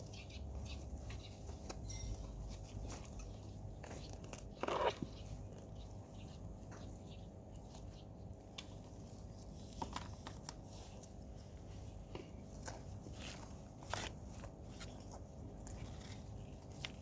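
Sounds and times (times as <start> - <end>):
plants and soil rustling: 0.0 - 17.0.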